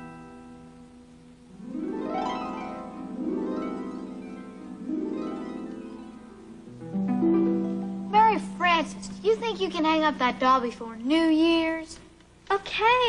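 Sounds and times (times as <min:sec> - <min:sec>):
harp arpeggios: 0:01.5 - 0:08.5.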